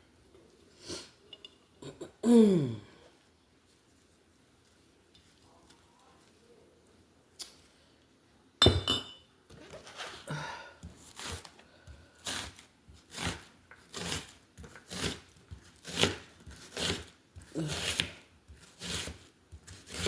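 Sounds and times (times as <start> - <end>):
glass clink: 8.6 - 9.3.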